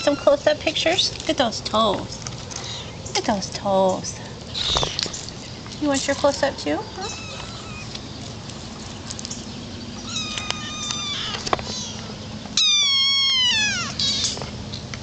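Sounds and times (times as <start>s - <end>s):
kittens meowing: 0.0s - 0.4s, 4.5s - 5.2s, 6.1s - 8.1s, 9.9s - 14.4s.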